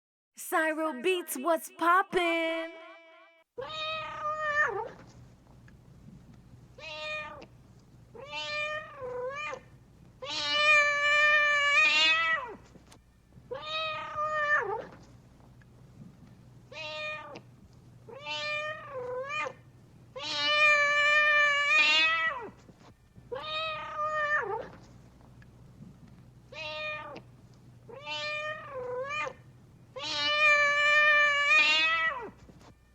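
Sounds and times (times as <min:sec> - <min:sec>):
cat meowing: 0:03.6 - 0:05.0, 0:06.8 - 0:07.5, 0:08.2 - 0:12.6, 0:13.5 - 0:14.9, 0:16.7 - 0:17.4, 0:18.1 - 0:19.6, 0:20.2 - 0:22.5, 0:23.3 - 0:24.7, 0:26.5 - 0:27.2, 0:27.9 - 0:29.4, 0:30.0 - 0:32.4.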